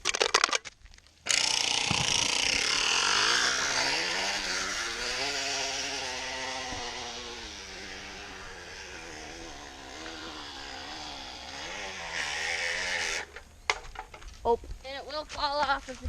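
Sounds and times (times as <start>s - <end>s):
can buzzing on bicycle wheel: 1.3s - 13.4s.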